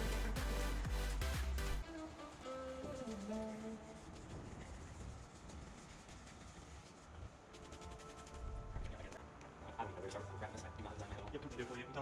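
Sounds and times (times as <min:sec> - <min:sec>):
bass line: 0:00.0 - 0:01.8
heavy kick drum: 0:00.0 - 0:01.8
electronic music: 0:00.0 - 0:02.1.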